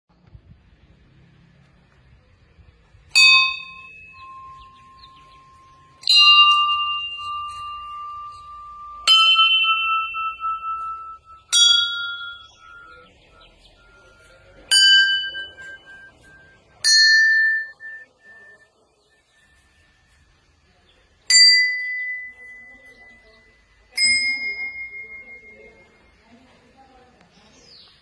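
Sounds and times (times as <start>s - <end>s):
temple bells struck: 3.1s - 18.7s.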